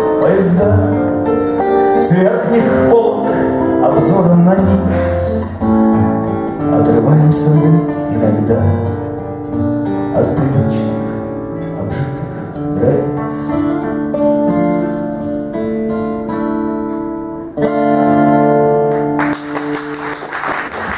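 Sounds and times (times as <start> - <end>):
acoustic guitar playing: 0.0 - 20.8
audience applause: 18.9 - 20.9.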